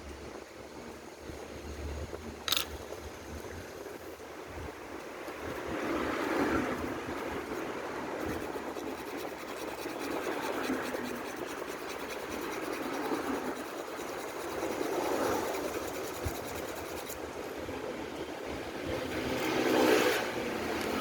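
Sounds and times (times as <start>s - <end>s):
toy motor ticking and whirring: 8.1s - 17.3s.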